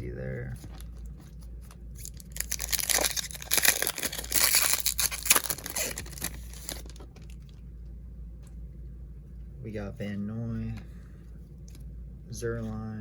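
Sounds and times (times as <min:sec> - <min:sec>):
wrapper tearing and crinkling: 0:02.0 - 0:07.3.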